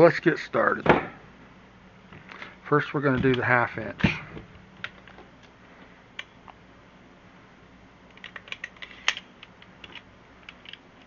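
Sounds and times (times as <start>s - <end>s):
staple gun clicks and rattles: 8.1s - 10.8s.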